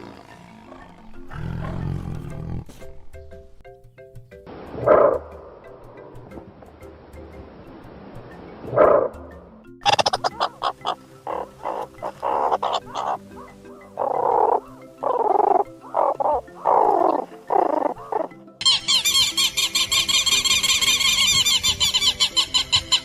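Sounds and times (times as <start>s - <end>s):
high-pitched chirping chorus: 9.8s - 23.0s.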